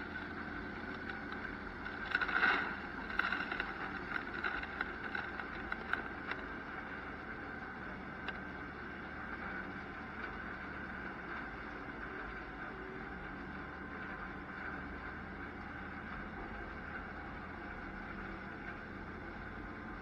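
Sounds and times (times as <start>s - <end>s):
light rattling: 0.0s - 7.6s
harvest machinery humming: 0.0s - 20.0s.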